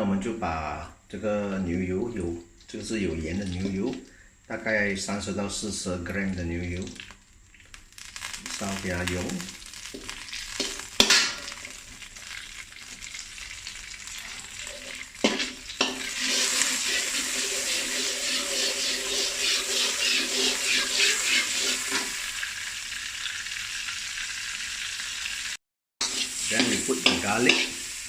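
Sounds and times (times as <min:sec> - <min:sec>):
butter sizzling in a pan: 0:06.6 - 0:28.0.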